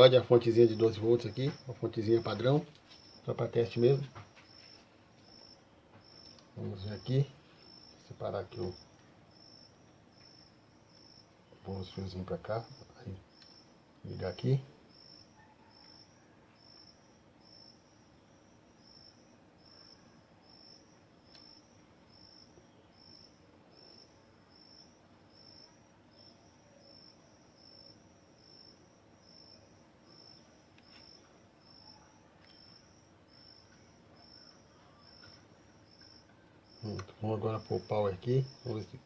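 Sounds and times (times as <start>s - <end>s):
cricket chirping: 0.0s - 39.0s.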